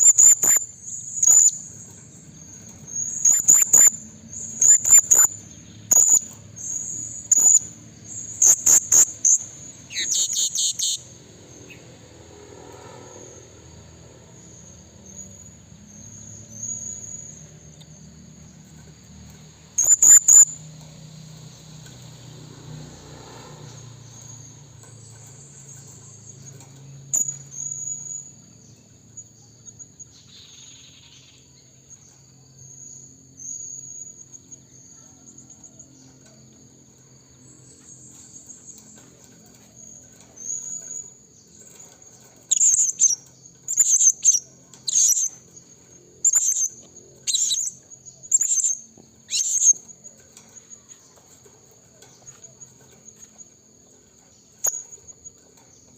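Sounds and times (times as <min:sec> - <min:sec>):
thin bird twittering: 0:00.0 - 0:11.1, 0:19.8 - 0:20.6, 0:42.4 - 0:50.2, 0:54.6 - 0:55.1.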